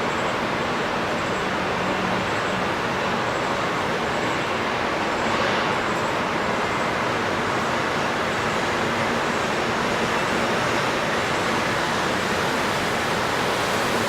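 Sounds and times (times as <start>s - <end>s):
outdoor rushing noise: 1.2s - 14.0s.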